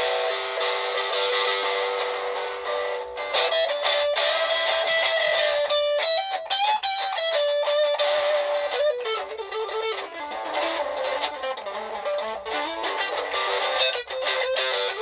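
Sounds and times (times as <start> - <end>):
electric guitar blues lick: 0.0 - 15.0
looped guitar playback: 0.0 - 15.0.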